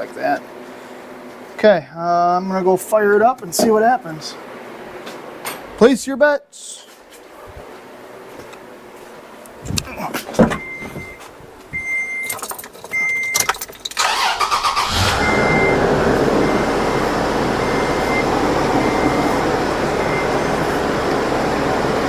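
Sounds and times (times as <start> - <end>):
car engine cranking and idling: 12.4 - 22.0
car chime beeping: 14.2 - 22.0.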